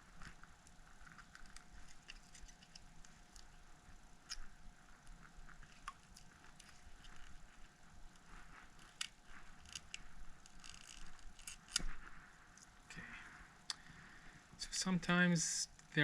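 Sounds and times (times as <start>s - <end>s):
tools scratching: 5.5s - 12.1s.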